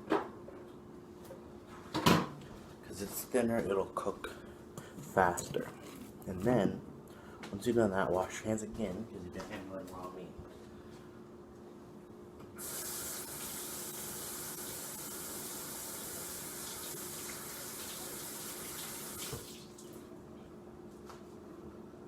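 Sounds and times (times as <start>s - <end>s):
tap water running: 12.6s - 20.0s.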